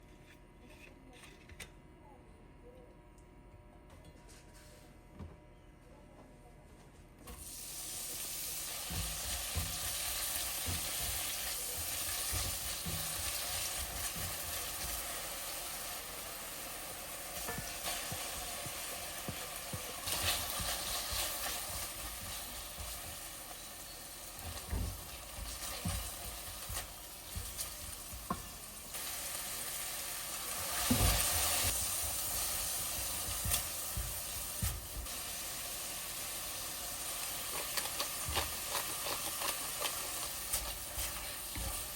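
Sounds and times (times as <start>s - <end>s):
food sizzling in a pan: 7.3s - 41.9s.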